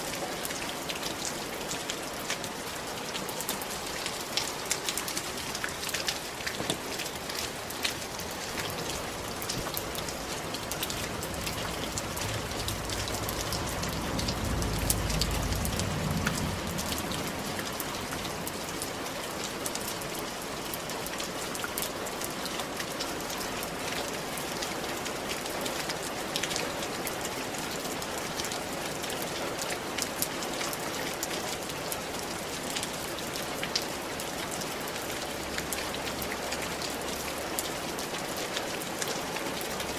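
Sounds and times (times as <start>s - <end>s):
rain on roof tiles: 0.0s - 39.9s
low rumble: 11.0s - 18.3s.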